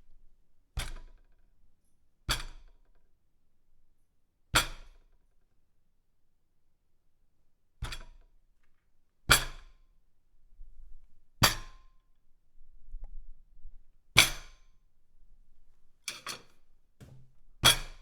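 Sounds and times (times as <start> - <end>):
dishes and cutlery clattering: 16.1 - 16.6.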